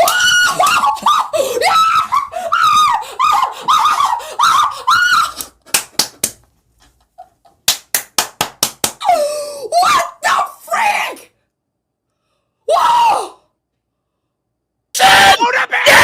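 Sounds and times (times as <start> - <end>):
person yelling: 15.0 - 16.0.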